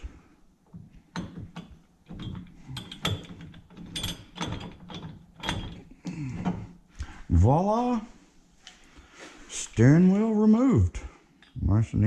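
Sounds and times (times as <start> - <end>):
metal clicks and clinks: 1.1 - 5.9.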